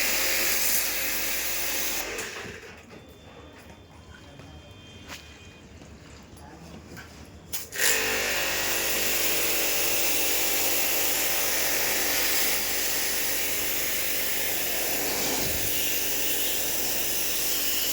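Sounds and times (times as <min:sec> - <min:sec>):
pressure washer spraying water: 0:07.8 - 0:17.9.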